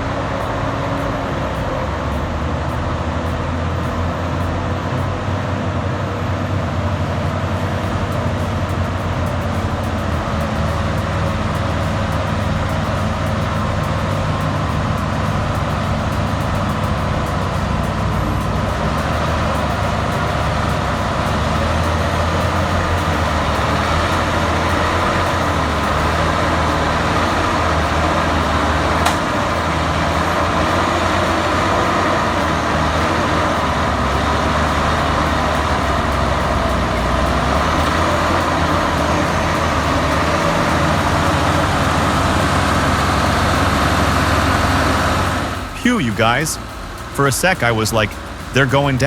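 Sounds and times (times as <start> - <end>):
heavy machine engine droning: 0.0 - 49.0
sharp click: 7.6 - 32.6.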